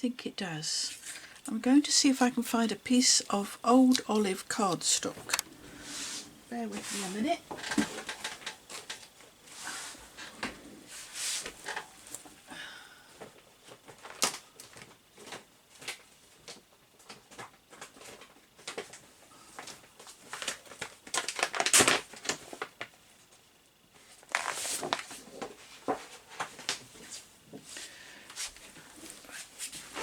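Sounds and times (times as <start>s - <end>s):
paper rustling and shuffling: 13.6s - 22.9s, 23.9s - 27.8s.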